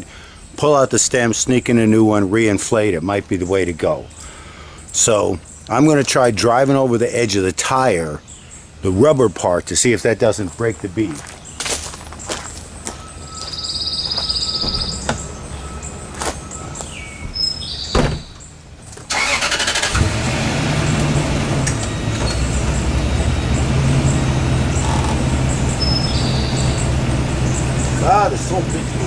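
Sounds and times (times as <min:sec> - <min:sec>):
truck engine starting and idling: 0:14.4 - 0:29.0
truck door clunks and clicks: 0:14.5 - 0:15.4, 0:16.2 - 0:19.1.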